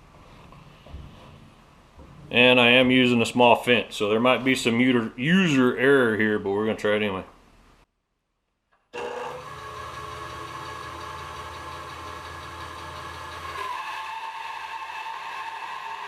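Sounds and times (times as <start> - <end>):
bandsaw running: 9.0 - 16.0.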